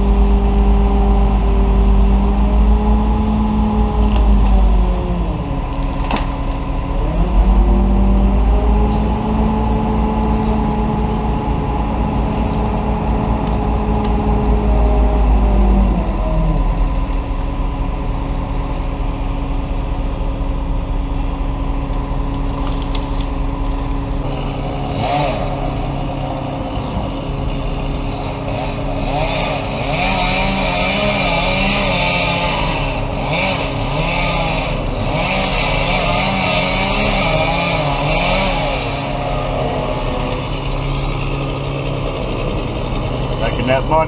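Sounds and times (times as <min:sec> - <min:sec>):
crane engine running: 0:00.0 - 0:44.0
chainsaw cutting wood: 0:22.4 - 0:44.0.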